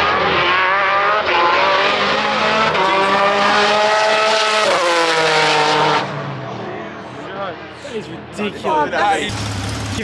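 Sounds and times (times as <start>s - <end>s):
car engine accelerating hard: 0.0s - 6.4s, 9.2s - 10.0s.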